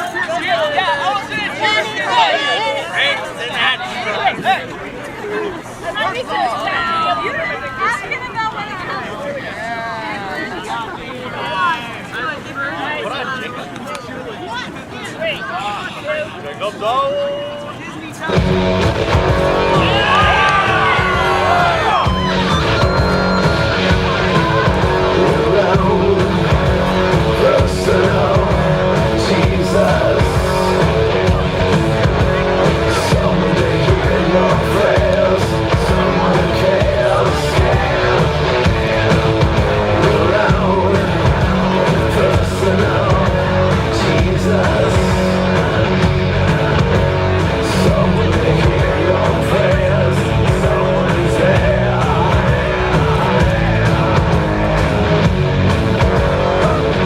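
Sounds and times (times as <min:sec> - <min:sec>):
rock music with guitar and singing: 0:18.4 - 0:57.0.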